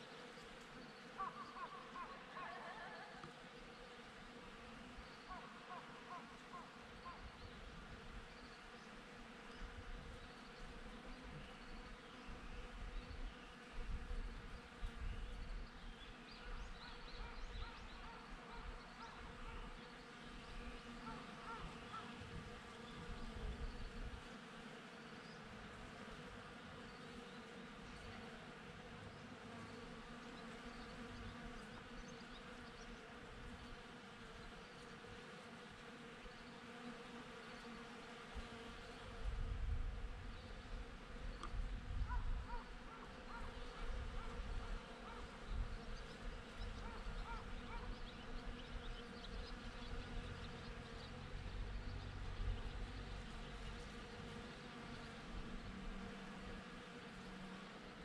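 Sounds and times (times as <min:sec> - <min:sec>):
bees buzzing: 0:18.0 - 0:58.0.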